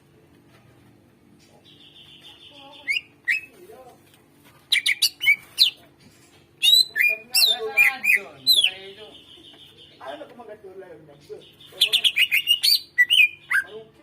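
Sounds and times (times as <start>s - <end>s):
bird singing: 1.5s - 3.5s, 6.6s - 10.3s, 11.2s - 14.0s.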